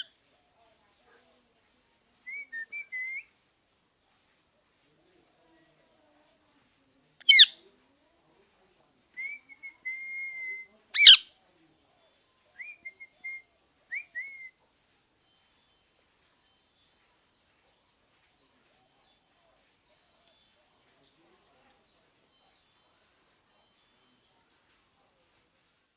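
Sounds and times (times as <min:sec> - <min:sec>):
parrot shrill calls: 0:07.3 - 0:07.5, 0:11.0 - 0:11.3
parrot whistling: 0:11.0 - 0:11.2.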